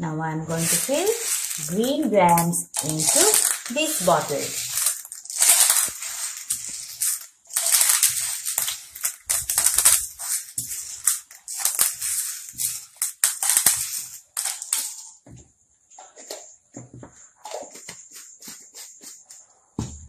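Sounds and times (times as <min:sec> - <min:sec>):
dry beans pattering into bottle: 0:00.5 - 0:15.2.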